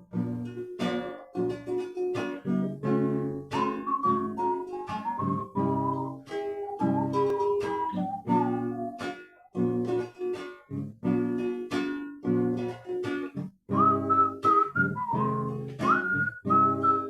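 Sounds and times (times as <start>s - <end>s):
acoustic guitar strumming: 0.0s - 17.0s
high bending melody line: 3.5s - 9.4s.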